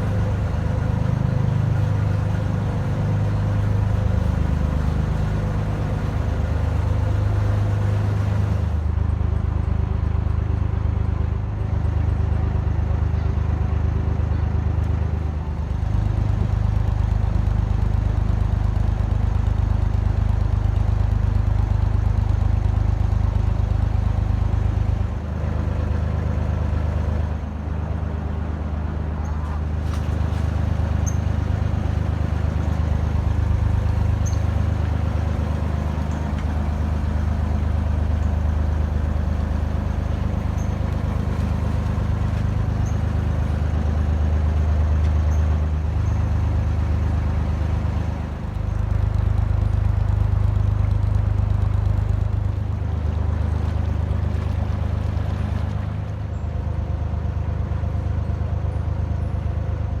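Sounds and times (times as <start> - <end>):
boat engine humming: 0.0 - 60.0.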